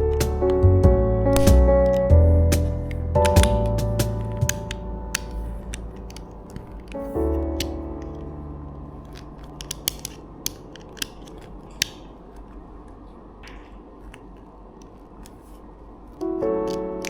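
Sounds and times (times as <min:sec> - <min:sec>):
plastic bricks clicking: 0:09.0 - 0:12.6, 0:16.6 - 0:17.0.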